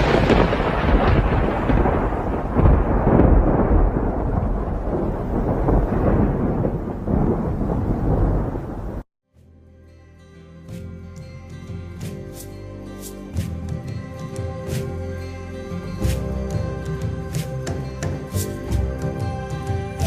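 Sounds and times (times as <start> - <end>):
rolling thunder rumble: 0.0 - 9.0.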